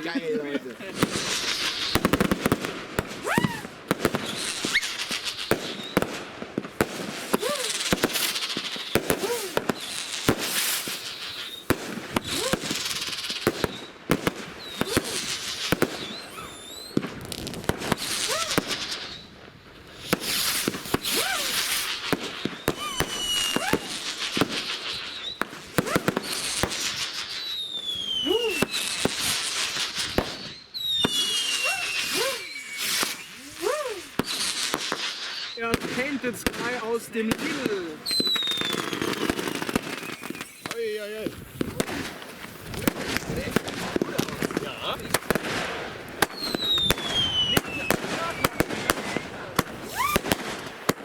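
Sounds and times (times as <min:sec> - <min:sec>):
firework bangs with crackling: 0:00.0 - 0:51.0
whistling firework shots: 0:00.9 - 0:51.0
falling whistles: 0:03.2 - 0:06.1, 0:08.6 - 0:11.7, 0:12.5 - 0:17.0, 0:18.1 - 0:19.4, 0:20.0 - 0:35.7, 0:38.0 - 0:40.8, 0:46.3 - 0:49.2, 0:49.8 - 0:50.4.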